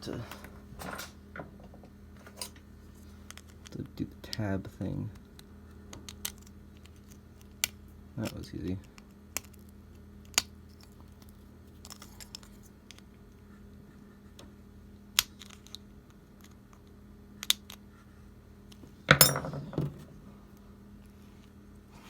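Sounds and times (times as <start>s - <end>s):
parts clattering: 18.8s - 20.3s.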